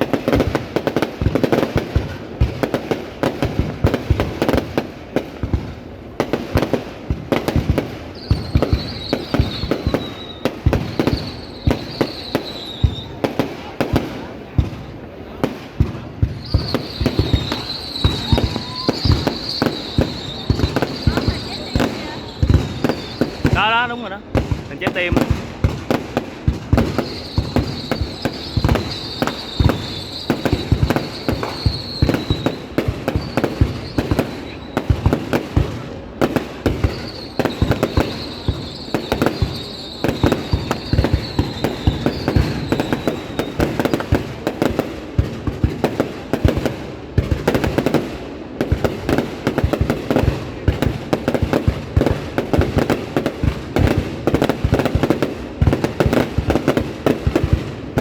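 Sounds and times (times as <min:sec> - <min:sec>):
fireworks bangs and crackles: 0:00.0 - 0:58.0
high falling firework whistle: 0:08.0 - 0:13.5, 0:16.2 - 0:23.8, 0:26.8 - 0:35.2, 0:36.7 - 0:44.2.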